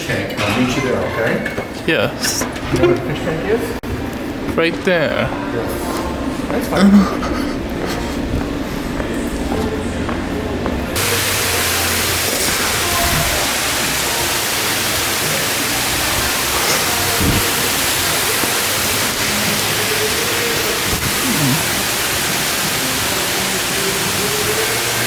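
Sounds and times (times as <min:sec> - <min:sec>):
rushing falling water: 0:11.0 - 0:25.0.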